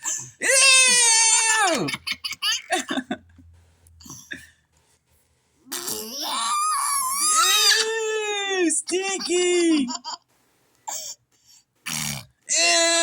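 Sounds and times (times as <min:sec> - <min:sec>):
girl blowing mouth-fart noises: 0:05.7 - 0:06.2.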